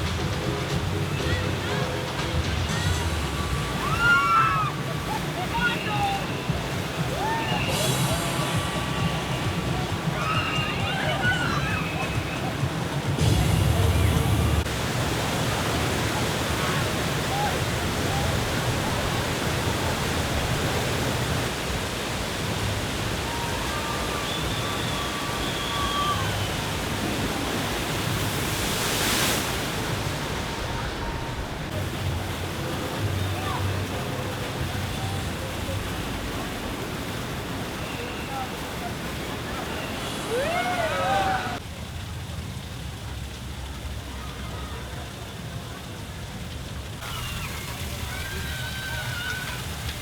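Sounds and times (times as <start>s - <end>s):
low rumble under hiss: 0.0s - 26.8s
water rushing: 0.0s - 50.0s.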